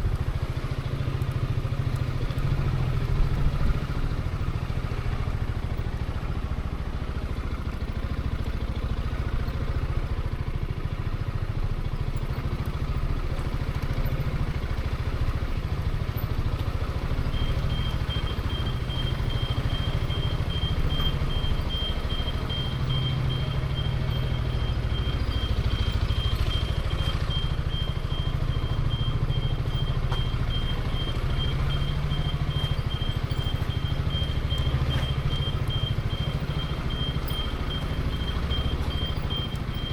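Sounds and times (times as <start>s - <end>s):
scooter engine running: 0.0s - 39.9s.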